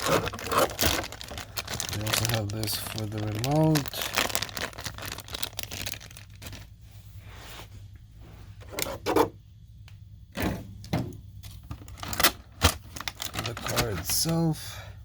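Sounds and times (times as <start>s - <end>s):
plastic packaging crinkling: 0.0s - 6.8s, 11.5s - 14.4s.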